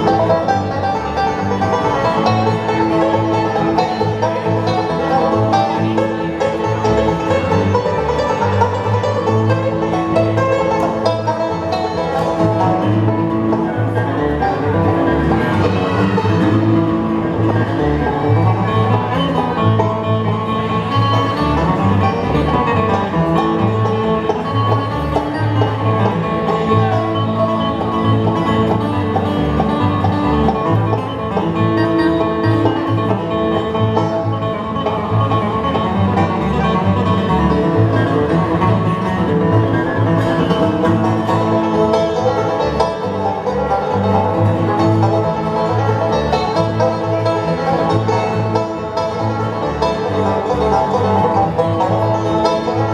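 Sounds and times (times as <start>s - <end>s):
banjo picking: 0.0s - 52.9s
bass line: 0.0s - 52.9s
guitar: 0.0s - 52.9s.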